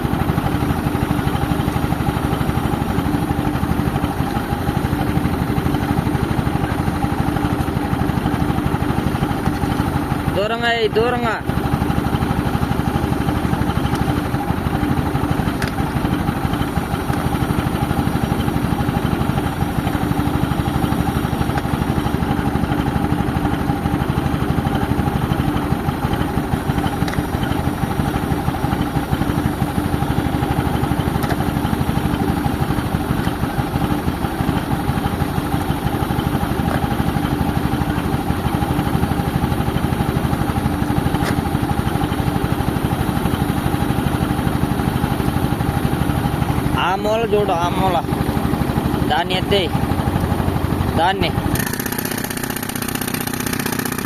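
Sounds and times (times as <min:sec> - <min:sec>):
rapid pulsing of air compressor: 0:00.0 - 0:54.0
tractor engine running: 0:00.0 - 0:54.0.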